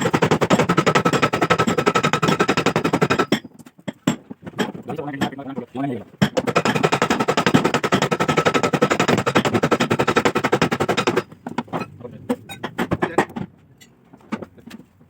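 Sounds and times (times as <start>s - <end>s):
power tool hammering sheet metal: 0.0s - 3.4s, 6.3s - 11.3s
scattered knocks: 0.0s - 5.6s, 6.2s - 13.5s.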